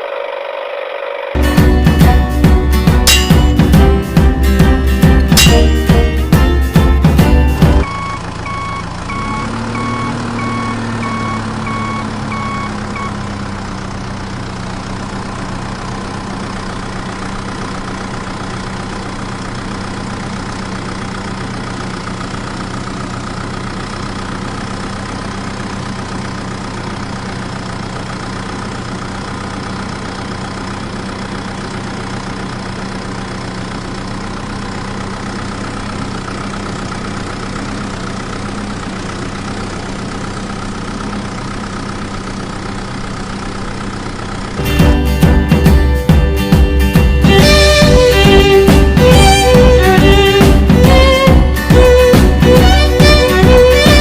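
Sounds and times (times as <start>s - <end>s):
vehicle engine idling: 0.0s - 54.0s
reversing alarm beeping: 7.8s - 13.2s.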